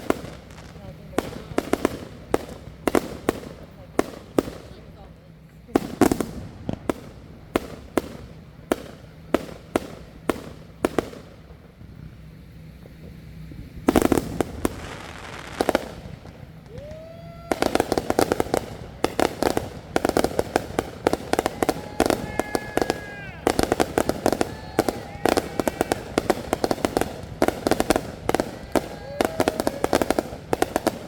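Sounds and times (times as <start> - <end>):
firework bangs: 0.0 - 31.0
fireworks crackling: 0.0 - 31.0
firework whistle: 5.8 - 31.0.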